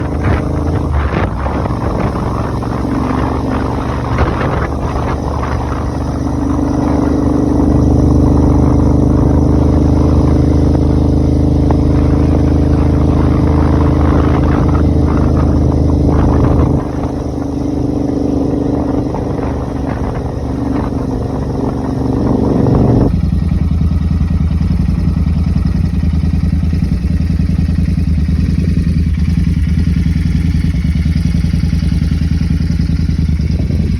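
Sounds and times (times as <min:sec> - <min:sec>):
motorcycle engine running: 0:00.0 - 0:33.9.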